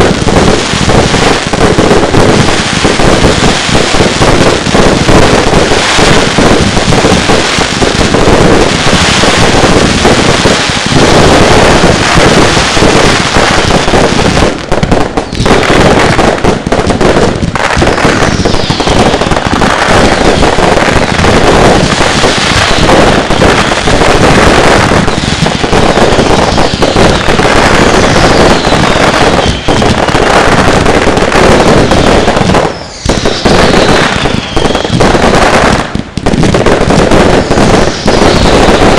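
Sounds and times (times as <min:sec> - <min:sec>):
falling firework whistles: 0:00.0 - 0:16.1, 0:17.0 - 0:36.0, 0:36.8 - 0:38.9
fireworks banging and crackling: 0:00.0 - 0:38.9.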